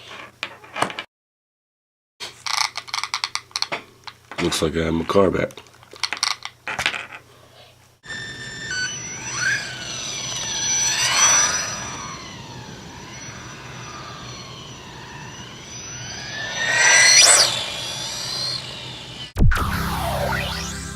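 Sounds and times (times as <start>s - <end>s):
toy car electric motor whining: 8.0s - 19.4s.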